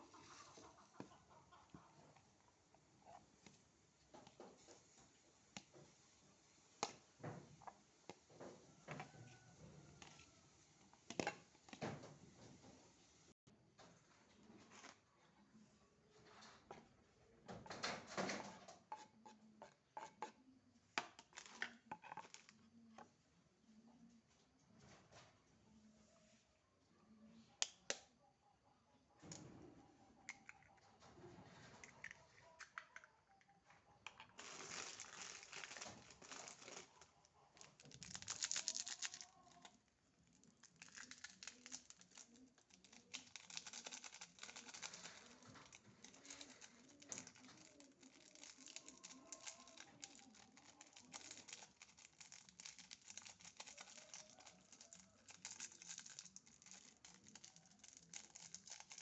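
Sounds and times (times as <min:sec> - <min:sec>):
crinkling: 0:17.5 - 0:23.1, 0:30.3 - 0:59.0.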